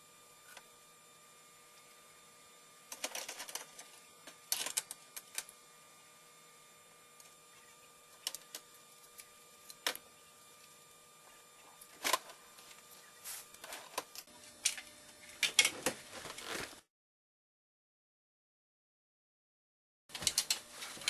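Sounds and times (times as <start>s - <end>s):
faint steady hum: 0.0s - 16.8s
clicks and knocks of small parts: 2.9s - 5.5s, 20.1s - 21.0s.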